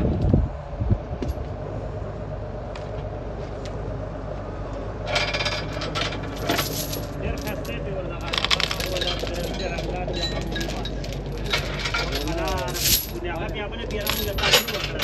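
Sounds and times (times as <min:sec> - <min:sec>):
low machine hum: 0:00.0 - 0:15.0
metal tools clinking and rattling: 0:05.0 - 0:15.0.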